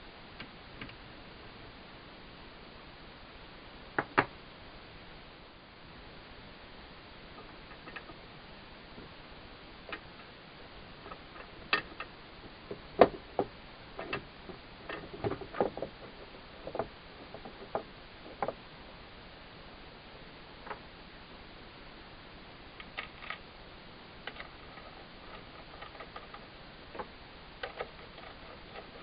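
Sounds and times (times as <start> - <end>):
irregular clicks and light knocks: 11.0 - 18.6, 24.2 - 29.0.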